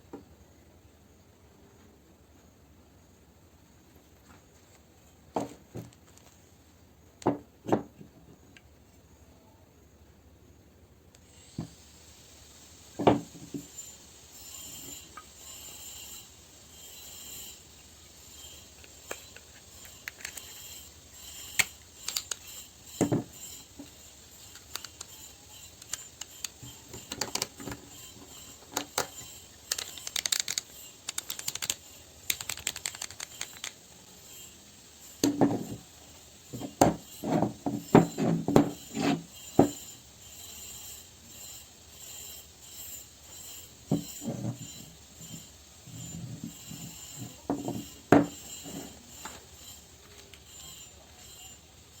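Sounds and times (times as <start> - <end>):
clicks and knocks of hand tools: 18.8 - 33.8.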